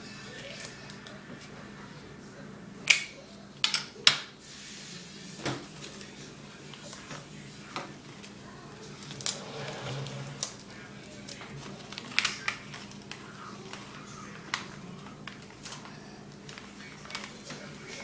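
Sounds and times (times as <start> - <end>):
paper being handled: 8.0 - 18.0.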